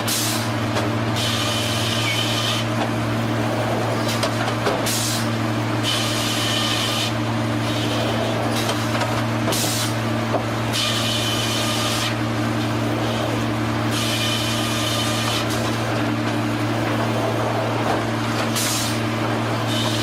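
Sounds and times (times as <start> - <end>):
sawmill machinery humming: 0.0 - 20.0
saw hissing through wood: 4.8 - 8.7, 18.5 - 20.0.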